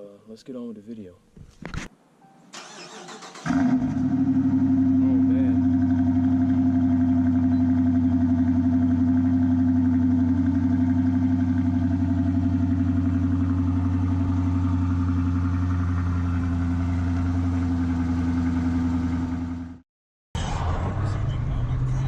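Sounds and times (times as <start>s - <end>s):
car engine running steadily: 3.5s - 19.8s.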